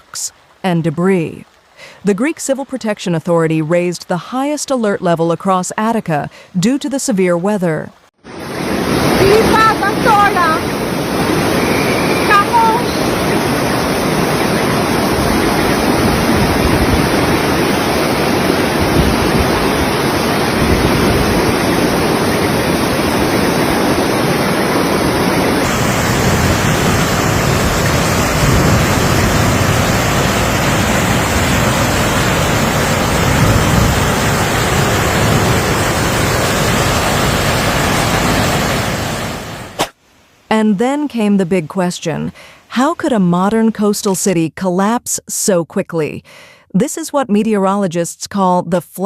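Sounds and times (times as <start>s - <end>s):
floodwater rushing: 8.2s - 39.9s
wind buffeting microphone: 8.6s - 37.7s.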